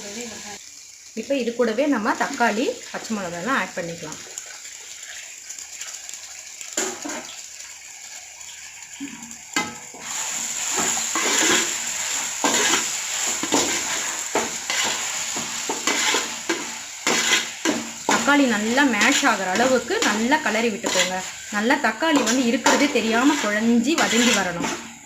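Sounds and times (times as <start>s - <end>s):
vegetables sizzling in hot oil: 0.0s - 25.0s
ladle scraping a pan: 9.6s - 18.3s, 18.9s - 25.0s
utensils knocking on a pan: 12.4s - 21.1s, 22.2s - 24.8s.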